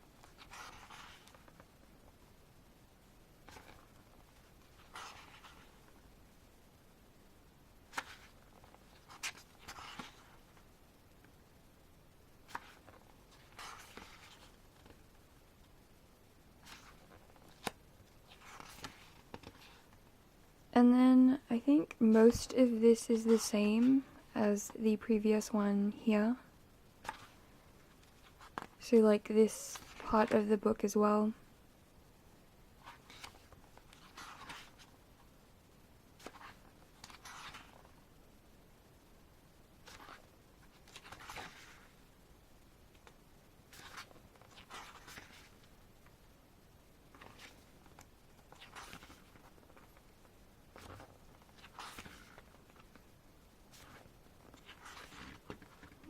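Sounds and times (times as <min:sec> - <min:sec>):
pages turning: 0:00.2 - 0:01.6, 0:03.4 - 0:05.8, 0:07.9 - 0:10.6, 0:12.4 - 0:15.0, 0:16.6 - 0:20.0, 0:27.0 - 0:27.4, 0:28.0 - 0:28.8, 0:29.7 - 0:30.2, 0:32.8 - 0:34.9, 0:36.2 - 0:37.9, 0:39.8 - 0:42.0, 0:42.9 - 0:45.7, 0:47.1 - 0:50.1, 0:50.7 - 0:53.0, 0:53.7 - 0:56.0.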